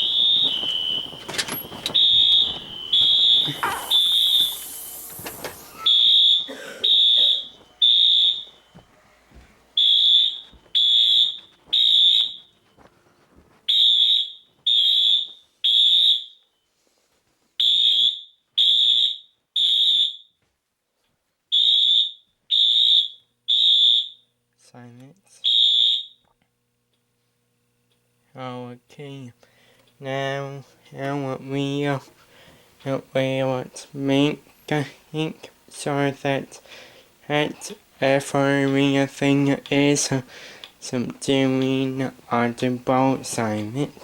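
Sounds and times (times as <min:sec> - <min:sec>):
fire alarm beeping: 0:00.0 - 0:09.0, 0:09.8 - 0:16.7, 0:17.6 - 0:20.4, 0:21.5 - 0:24.4, 0:25.4 - 0:26.3.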